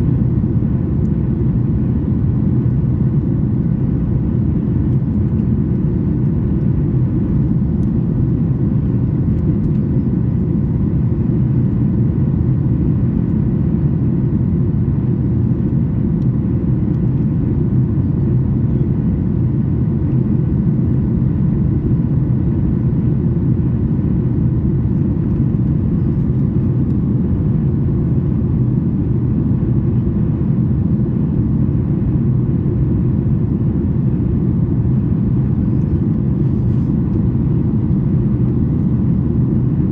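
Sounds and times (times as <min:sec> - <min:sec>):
airplane cabin drone: 0:00.0 - 0:39.9.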